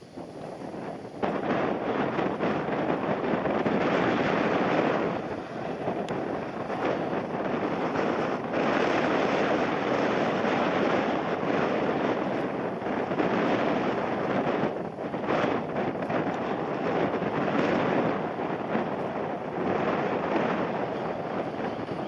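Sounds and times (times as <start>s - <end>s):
jet engine noise: 0.0s - 22.0s
wind buffeting microphone: 0.0s - 22.0s.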